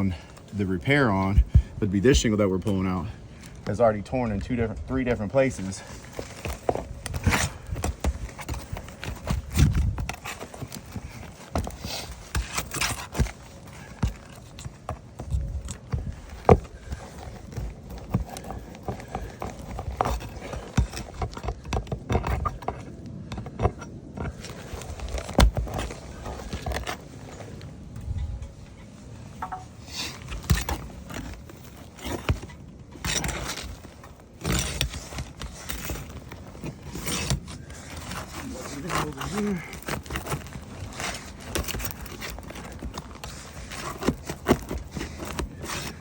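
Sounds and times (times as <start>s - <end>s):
pry bar scraping under shingles: 0.0s - 46.0s.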